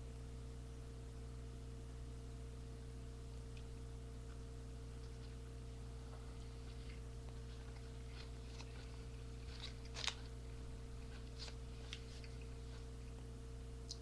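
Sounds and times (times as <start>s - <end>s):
steady electrical hum: 0.0s - 14.0s
wet chewing clicks: 6.7s - 13.2s.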